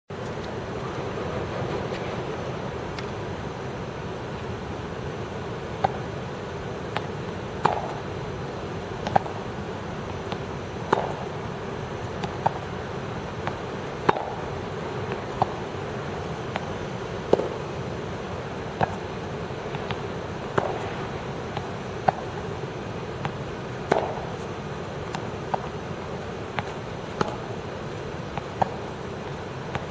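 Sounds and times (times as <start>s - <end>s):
background hum: 0.1s - 29.9s
racquets hitting tennis balls: 4.2s - 29.9s
tennis ball bouncing: 5.8s - 6.2s, 6.8s - 8.1s, 8.8s - 29.9s.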